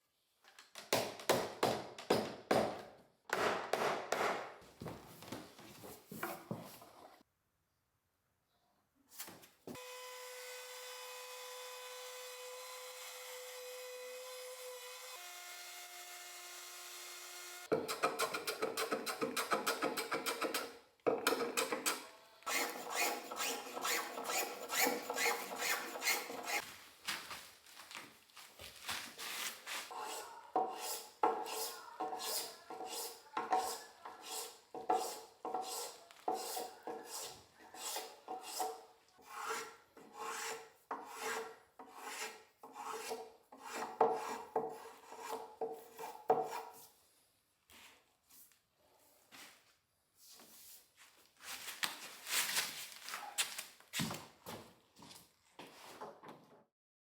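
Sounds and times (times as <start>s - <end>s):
rasp filing wood: 22.5s - 26.6s, 29.9s - 46.8s.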